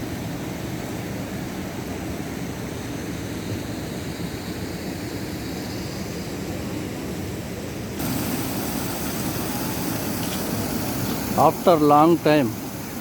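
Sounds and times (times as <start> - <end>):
water rushing from tank: 8.0 - 13.0.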